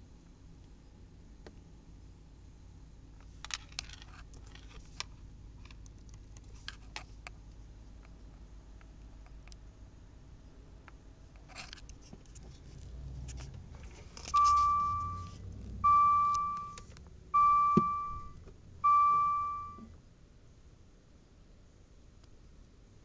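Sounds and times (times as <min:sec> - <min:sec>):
instrument cluster chime: 0:14.4 - 0:16.8, 0:17.4 - 0:19.8.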